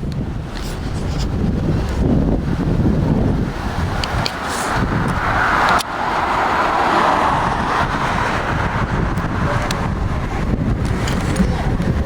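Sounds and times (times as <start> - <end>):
wind rumble on microphone: 0.0 - 12.0
car passing by: 2.5 - 12.0.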